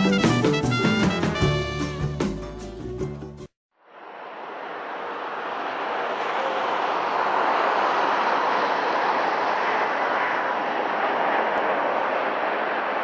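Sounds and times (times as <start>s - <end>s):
jet engines roaring: 3.9s - 13.0s.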